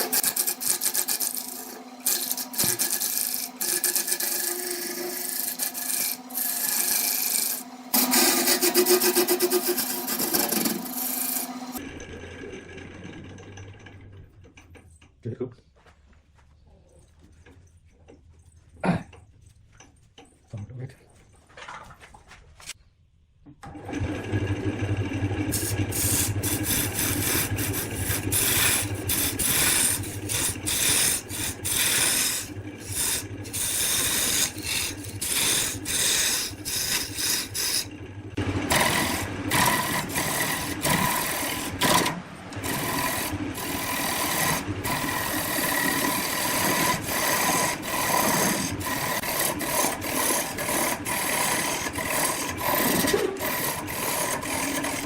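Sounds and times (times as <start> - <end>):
tool scraping wood on lathe: 0.0 - 11.8, 25.5 - 55.0.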